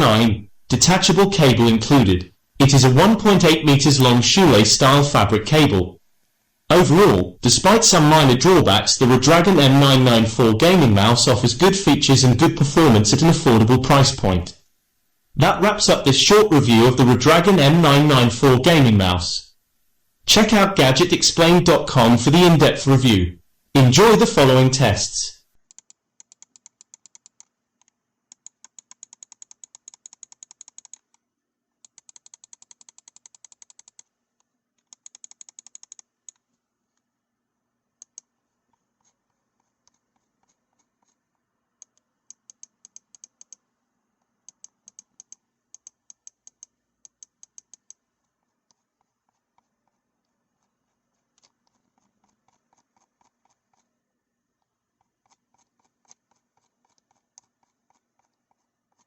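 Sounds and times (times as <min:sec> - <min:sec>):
mouse buttons clicking: 0:25.7 - 0:31.2, 0:31.8 - 0:34.1, 0:34.8 - 0:36.4, 0:38.0 - 0:39.2, 0:41.8 - 0:43.6, 0:44.4 - 0:48.0.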